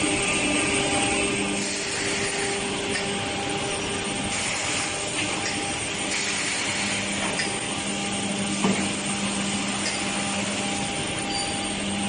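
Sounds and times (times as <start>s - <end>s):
woodworking machinery running: 0.0s - 12.0s.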